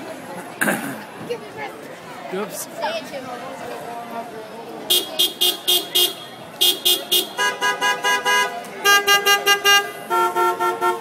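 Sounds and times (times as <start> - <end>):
car horns playing a tune: 4.9 - 11.0.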